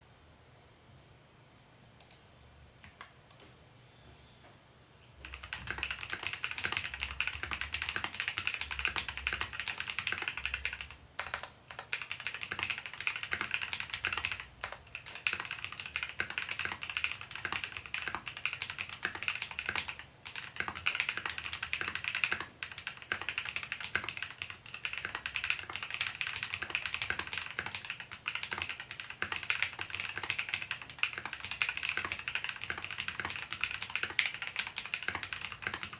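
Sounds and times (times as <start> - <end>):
typing on mechanical keyboard: 5.2 - 35.9.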